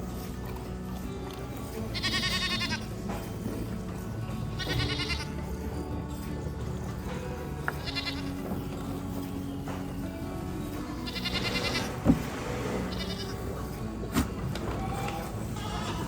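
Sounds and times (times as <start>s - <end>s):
background music: 0.0s - 16.0s
goat bleating: 1.8s - 2.9s, 4.5s - 5.5s, 7.7s - 8.4s, 10.9s - 12.1s, 12.8s - 13.6s, 14.7s - 16.0s.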